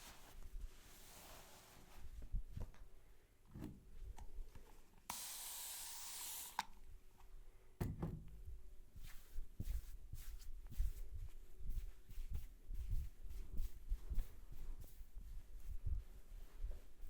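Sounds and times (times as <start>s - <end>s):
sprayer hissing: 5.1s - 6.6s.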